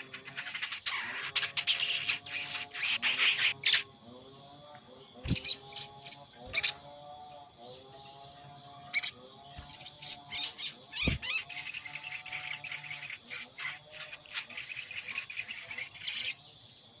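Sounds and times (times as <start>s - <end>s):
fast chattering bird chips: 0.0s - 3.8s
bird calling with high notes: 9.0s - 16.4s
low thump: 11.0s - 11.3s.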